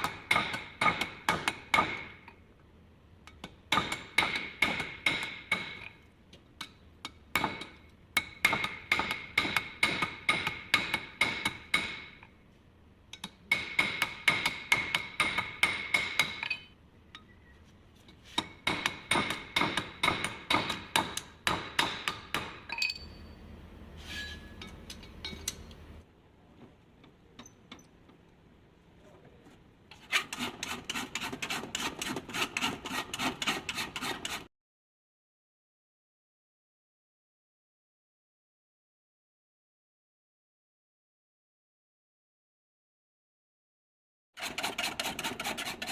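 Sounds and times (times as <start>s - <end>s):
hammer striking steel: 6.6s - 12.2s, 13.2s - 16.7s, 18.4s - 23.4s.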